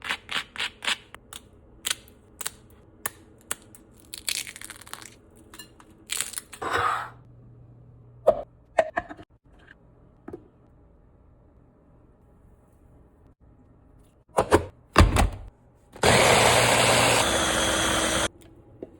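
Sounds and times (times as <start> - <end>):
rice chips snapping and crunching: 1.9 - 5.2.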